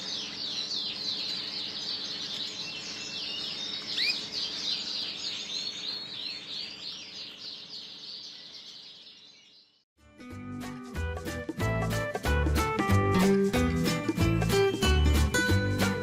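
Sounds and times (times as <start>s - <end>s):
canary singing: 0.0s - 9.7s.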